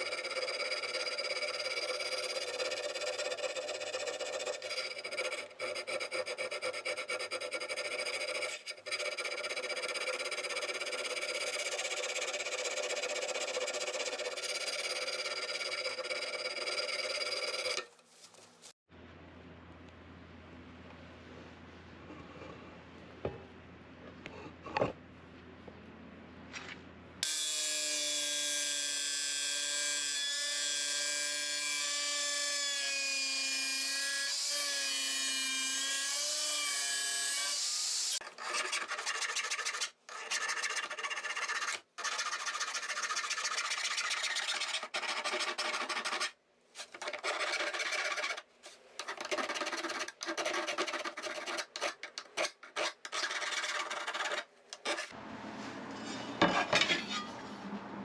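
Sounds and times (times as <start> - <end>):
angle grinder cutting steel: 0.0 - 17.9, 27.2 - 38.2.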